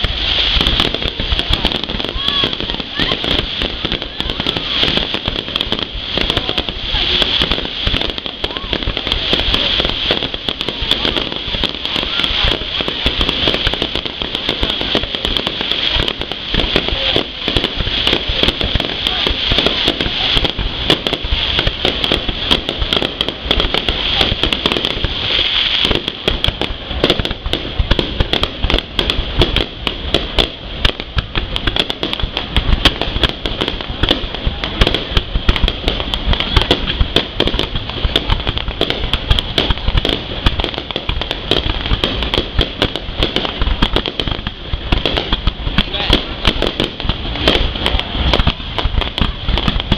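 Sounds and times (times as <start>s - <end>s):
fireworks crackling and banging: 0.0s - 49.9s
voices in background: 0.8s - 25.4s.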